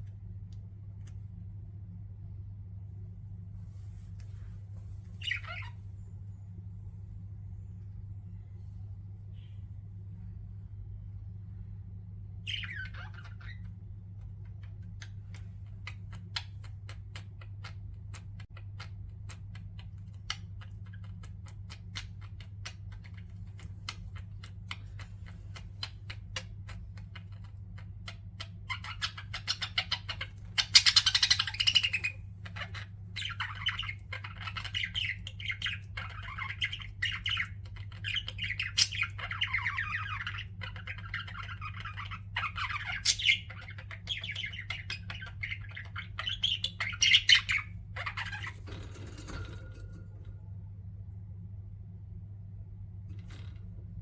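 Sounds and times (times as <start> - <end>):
low hum: 0.0 - 18.4, 31.1 - 54.0
budgerigars chattering: 5.2 - 5.8, 19.8 - 50.2.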